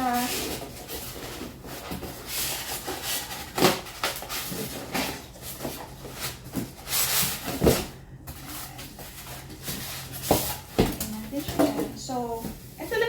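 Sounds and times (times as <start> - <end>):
packaging rustling: 0.0 - 13.0.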